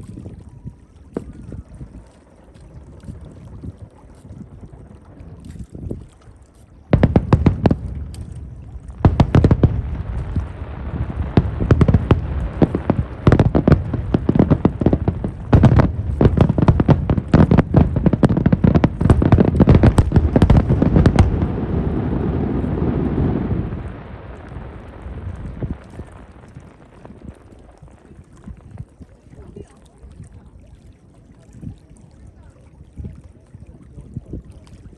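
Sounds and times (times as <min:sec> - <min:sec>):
rumbling crackle of fireworks: 0:06.8 - 0:29.4
fireworks booming and cracking: 0:06.9 - 0:28.0.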